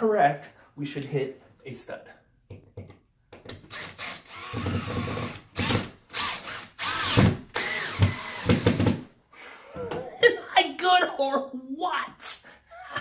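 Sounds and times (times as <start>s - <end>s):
cordless drill driving screw: 3.5s - 9.0s.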